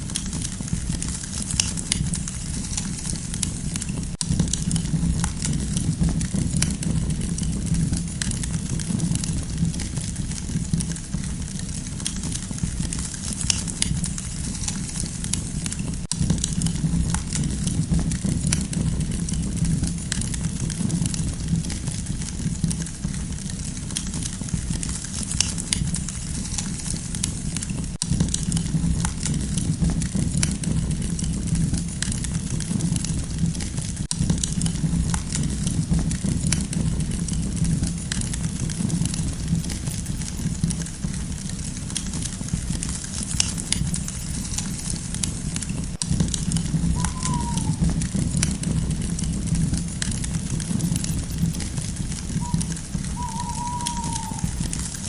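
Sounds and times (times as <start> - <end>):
campfire crackling: 34.2 - 55.0.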